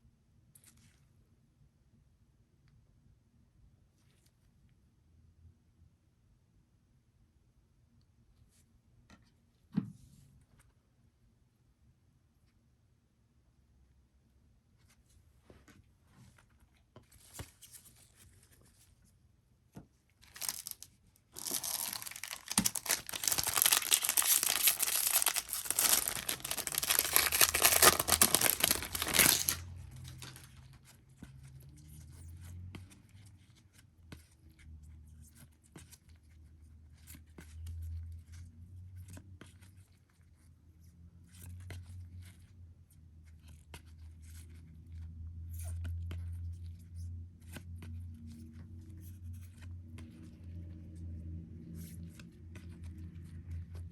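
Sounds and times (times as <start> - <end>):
plastic packaging tearing and crinkling: 20.2 - 30.6.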